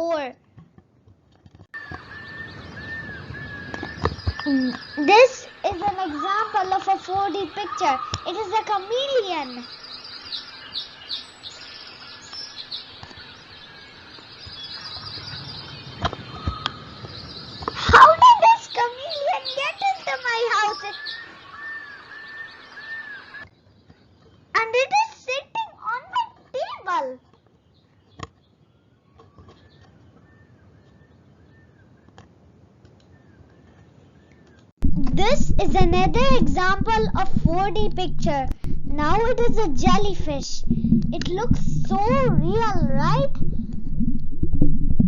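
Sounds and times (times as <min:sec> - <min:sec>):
bird chirping: 0:01.8 - 0:24.4.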